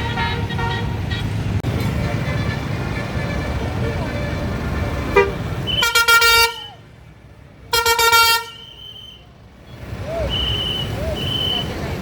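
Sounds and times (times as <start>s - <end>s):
bus horn blasts: 0.0s - 6.8s, 7.7s - 9.3s, 10.3s - 11.9s
passing vehicle road noise: 0.0s - 12.0s.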